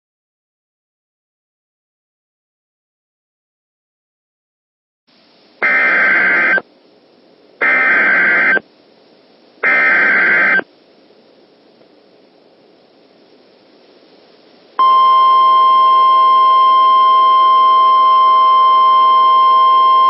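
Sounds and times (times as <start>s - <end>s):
faint radio hiss: 5.1s - 20.0s
shrill digital data tones: 5.6s - 6.6s, 7.6s - 8.6s, 9.6s - 10.7s.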